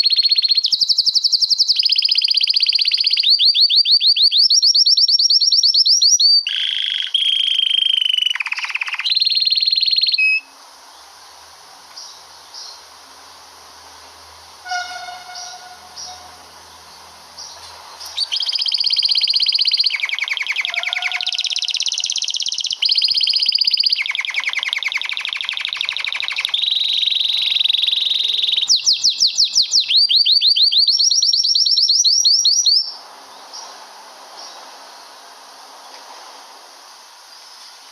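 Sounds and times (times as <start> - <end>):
canary singing trills: 0.0 - 10.6, 14.6 - 33.7.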